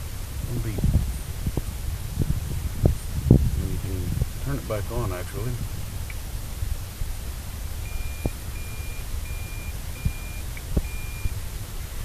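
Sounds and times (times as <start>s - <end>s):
high-pitched reverse warning beeps: 7.8s - 11.4s.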